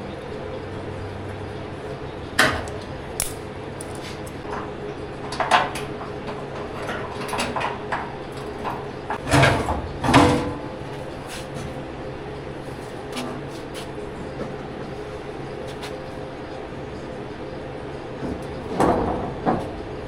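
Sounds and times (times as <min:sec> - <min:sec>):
steady background hum: 0:00.0 - 0:20.0
metal clanks and knocks: 0:03.8 - 0:10.8, 0:18.2 - 0:19.8.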